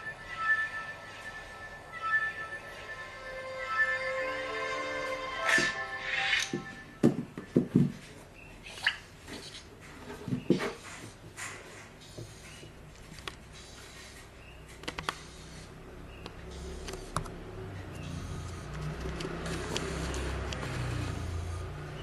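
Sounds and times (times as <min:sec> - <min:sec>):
small motors whirring: 0:18.0 - 0:22.0.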